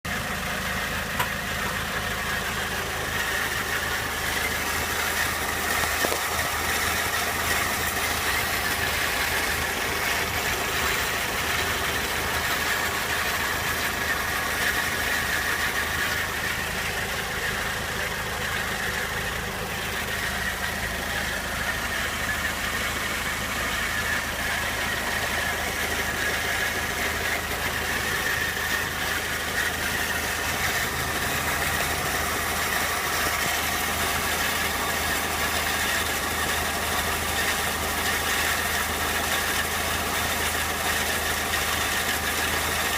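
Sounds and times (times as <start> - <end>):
car engine idling: 0.0 - 42.9.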